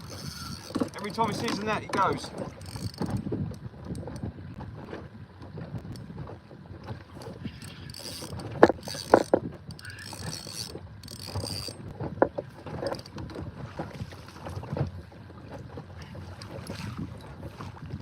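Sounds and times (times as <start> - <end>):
wind rumble on microphone: 0.0 - 18.0
sharp knocks on boat: 11.9 - 18.0.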